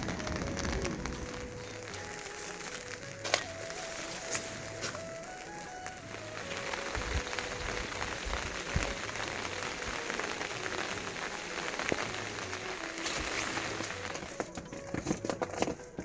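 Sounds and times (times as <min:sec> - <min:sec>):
rain pattering: 0:00.0 - 0:16.0.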